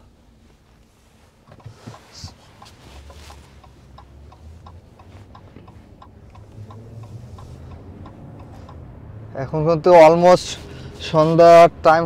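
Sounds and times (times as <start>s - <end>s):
engine and tyre hum: 0.0s - 12.0s
turn signal clicking: 1.4s - 9.0s.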